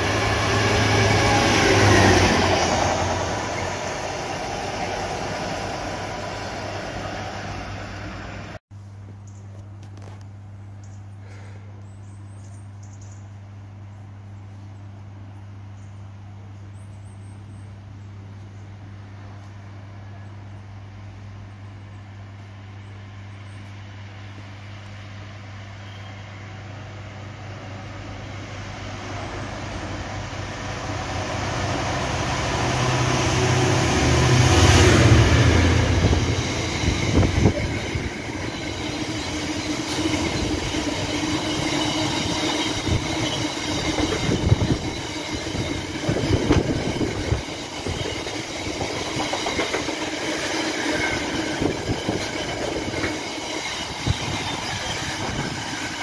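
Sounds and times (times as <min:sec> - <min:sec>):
train arriving: 0:00.0 - 0:08.6, 0:17.4 - 0:56.0
wheels clattering over rail joints: 0:36.4 - 0:56.0.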